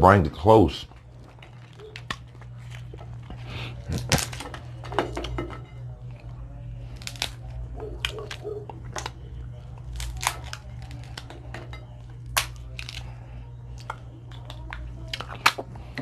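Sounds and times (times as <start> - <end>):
steady low hum: 0.0 - 16.0
crab shell cracking: 1.2 - 3.3, 3.9 - 4.6, 6.9 - 11.5, 12.1 - 15.7.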